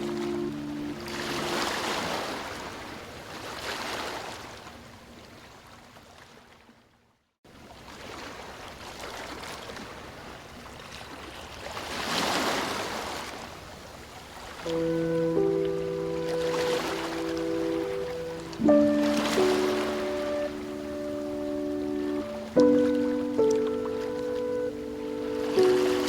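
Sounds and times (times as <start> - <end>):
held music notes: 0.0 - 2.3, 14.7 - 26.0
ocean waves breaking: 0.0 - 4.6, 14.3 - 26.0.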